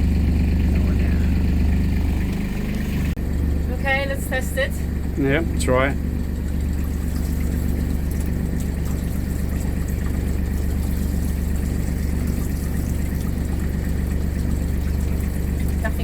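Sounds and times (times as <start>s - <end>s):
diesel engine idling: 0.0s - 16.0s
water running from tap: 3.8s - 16.0s.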